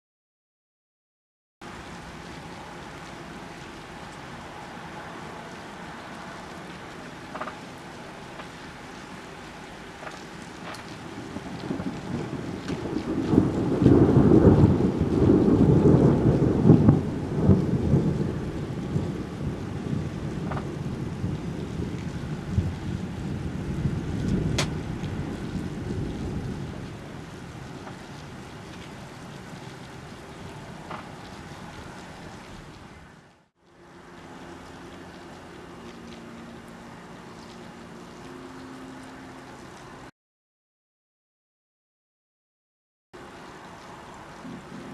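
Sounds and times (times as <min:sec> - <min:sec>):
thunder rolling: 0:10.6 - 0:32.4, 0:44.4 - 0:44.9
steady background hiss: 0:43.2 - 0:44.9.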